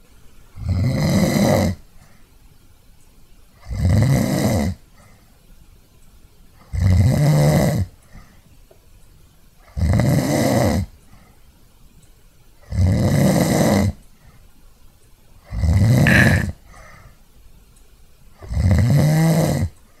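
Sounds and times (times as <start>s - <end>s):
quiet breathing: 1.8s - 2.5s, 4.8s - 5.5s, 7.9s - 8.6s, 11.0s - 11.6s, 14.1s - 14.6s, 16.0s - 17.3s
person snoring: 16.0s - 16.5s.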